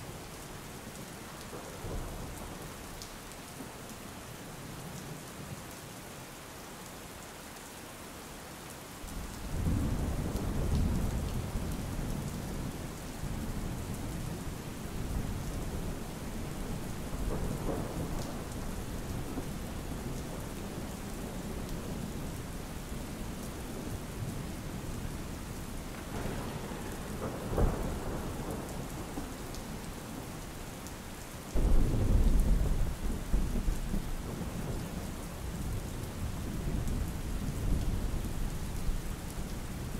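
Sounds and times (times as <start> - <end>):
steady rain: 0.0 - 39.9
thunder rumbling: 15.1 - 22.3, 25.9 - 30.3, 31.6 - 38.2.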